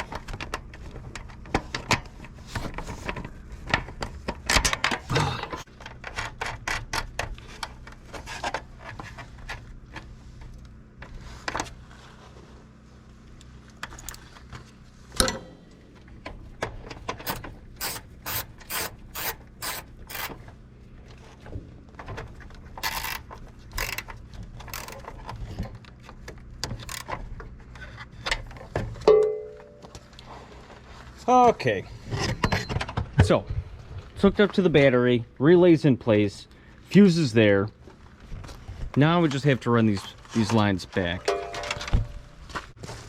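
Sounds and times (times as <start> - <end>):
faint steady hum: 0.1 - 39.3
sharp metallic clicks and rattles: 15.2 - 20.5, 22.0 - 29.3.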